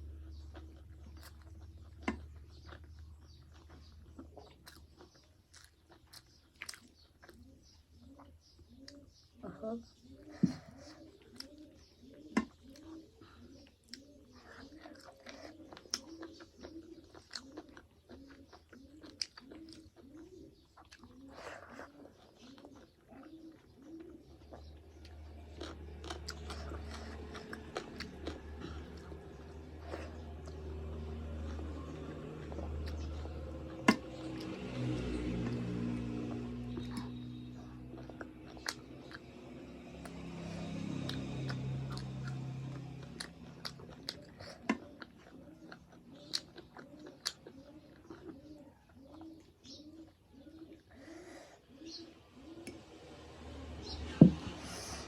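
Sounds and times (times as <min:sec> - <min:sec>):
wet chewing: 0:00.0 - 0:09.2, 0:10.1 - 0:51.2
low steady hum: 0:22.3 - 0:55.0.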